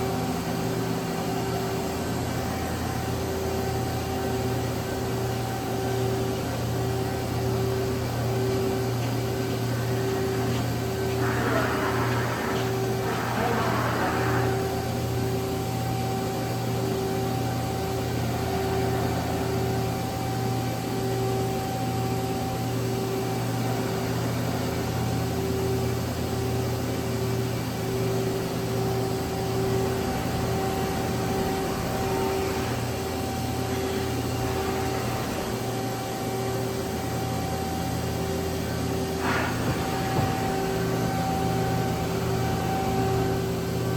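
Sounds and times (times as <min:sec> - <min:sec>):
machinery humming: 0:00.0 - 0:43.9.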